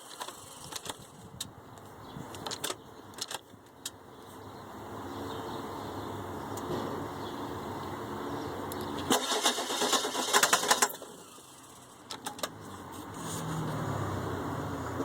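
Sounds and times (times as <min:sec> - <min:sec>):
diesel engine cranking: 0:00.0 - 0:01.6, 0:08.7 - 0:15.0.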